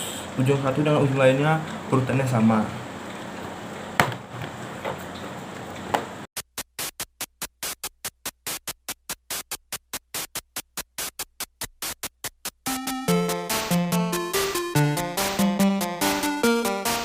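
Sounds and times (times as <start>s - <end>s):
electronic synth melody with beat: 6.8s - 17.0s.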